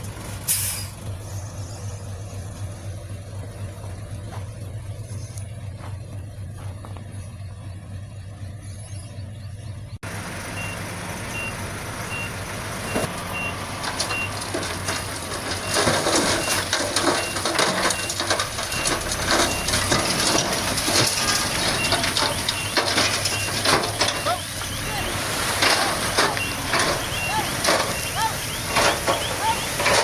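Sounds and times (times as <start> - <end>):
diesel engine running: 0.0 - 30.0
reversing alarm beeping: 10.5 - 30.0
rough grinding noise: 12.6 - 30.0.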